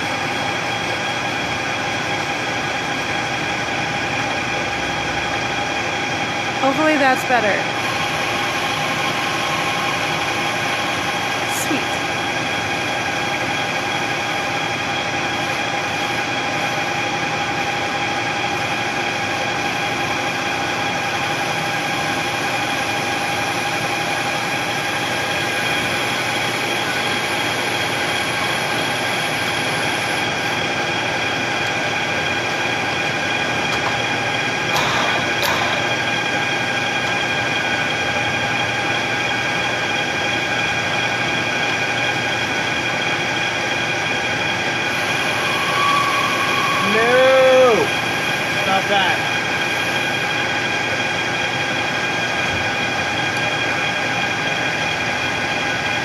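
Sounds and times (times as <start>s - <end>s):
high-pitched whine: 0.0s - 56.0s
machine tool cutting metal: 34.7s - 37.2s.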